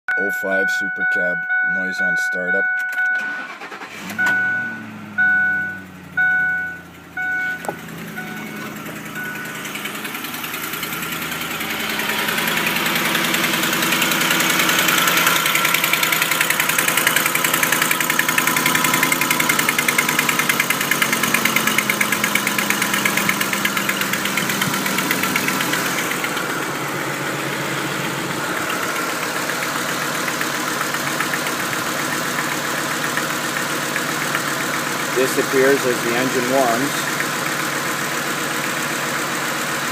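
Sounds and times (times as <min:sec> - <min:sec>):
warning chime: 0:00.1 - 0:10.1
rapid engine ticking: 0:00.2 - 0:39.9
pickup engine idling: 0:00.5 - 0:39.9.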